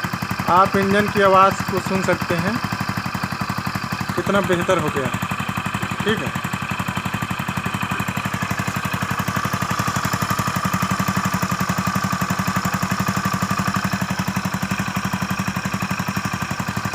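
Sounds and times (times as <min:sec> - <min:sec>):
motorcycle engine idling: 0:00.0 - 0:16.9.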